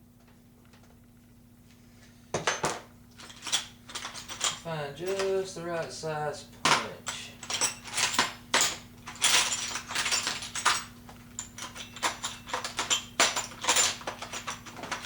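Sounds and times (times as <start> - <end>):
metal hand tools clinking: 3.2 - 5.5, 6.6 - 15.0.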